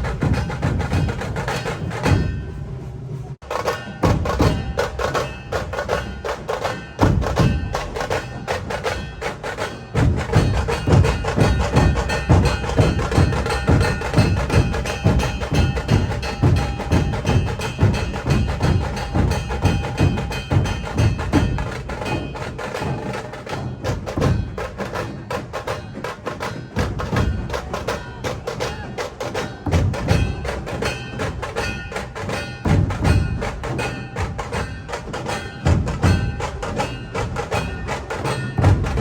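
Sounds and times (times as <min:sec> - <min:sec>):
fast percussion strikes: 0:00.0 - 0:39.0.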